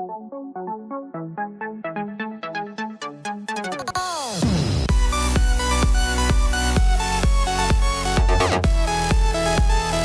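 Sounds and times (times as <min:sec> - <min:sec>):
electronic dance music: 0:02.5 - 0:10.0.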